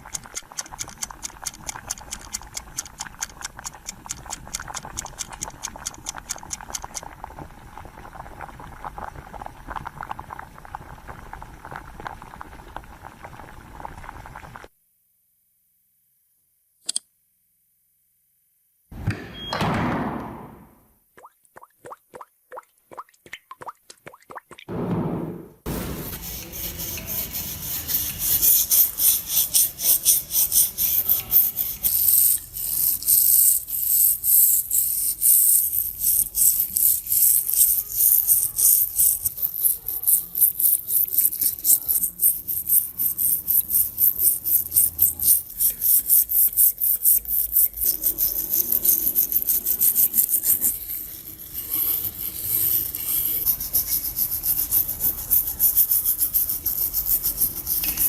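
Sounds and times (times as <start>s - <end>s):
scrubbing strokes on metal: 25.7s - 58.0s.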